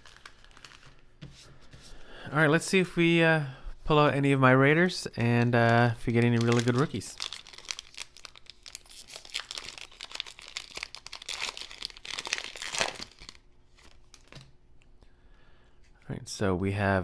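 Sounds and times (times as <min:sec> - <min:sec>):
wrapper tearing and crinkling: 0:00.0 - 0:01.0, 0:06.0 - 0:14.5.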